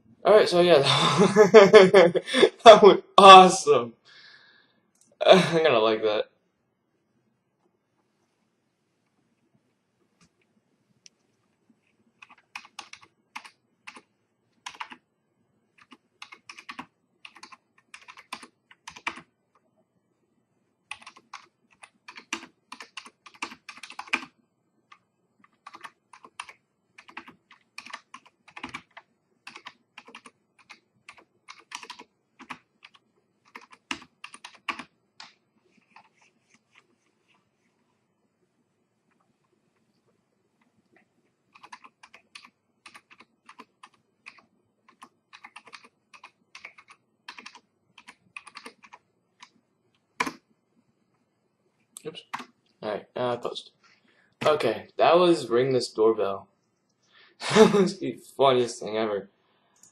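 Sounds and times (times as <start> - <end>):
typing on computer keyboard: 12.2 - 15.0, 15.7 - 19.3, 20.9 - 36.8, 41.5 - 49.6, 50.2 - 50.4, 52.3 - 52.6.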